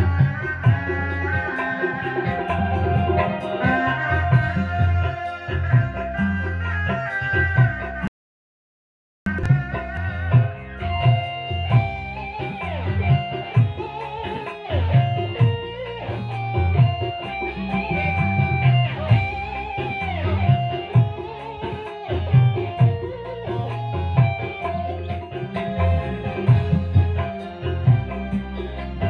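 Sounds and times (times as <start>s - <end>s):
heavy drum beat: 0.0s - 7.0s.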